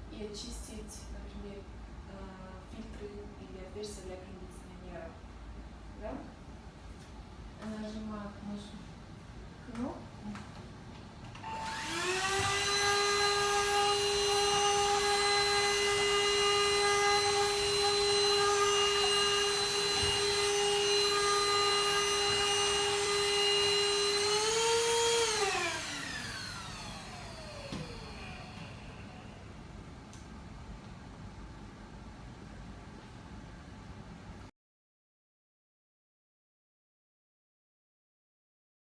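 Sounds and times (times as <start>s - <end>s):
vacuum cleaner motor whine: 11.3s - 29.6s.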